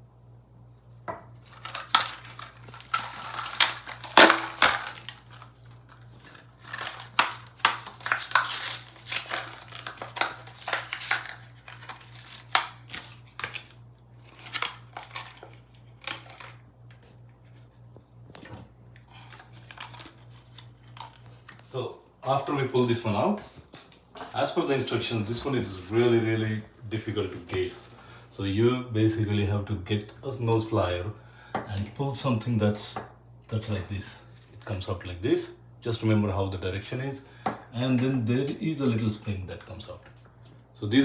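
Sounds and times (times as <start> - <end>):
plastic packaging crinkling: 1.4 - 17.7, 18.3 - 28.0.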